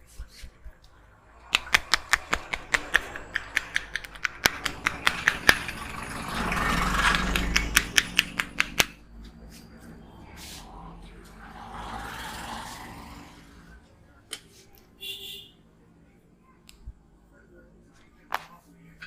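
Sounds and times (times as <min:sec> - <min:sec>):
loud rushing noise: 0:00.8 - 0:09.0, 0:09.8 - 0:13.7.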